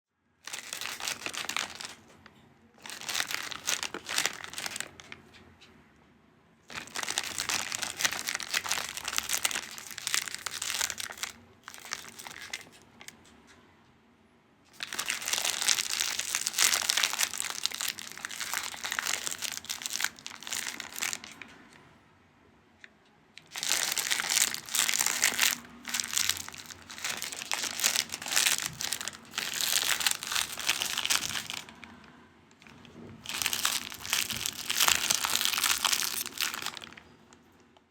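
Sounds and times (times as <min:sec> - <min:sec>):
foil packet crinkling: 0:00.4 - 0:02.2, 0:02.8 - 0:05.2, 0:06.7 - 0:13.1, 0:14.7 - 0:21.4, 0:23.4 - 0:31.9, 0:32.6 - 0:37.1.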